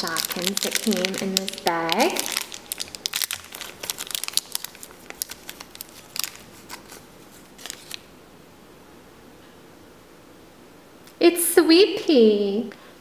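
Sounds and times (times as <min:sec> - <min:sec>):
plastic bag crinkling: 0:00.0 - 0:08.1.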